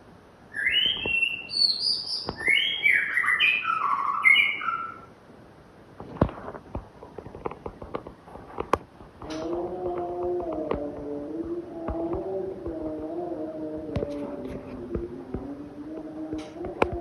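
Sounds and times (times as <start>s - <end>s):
bird singing whistled notes: 0.5s - 5.1s.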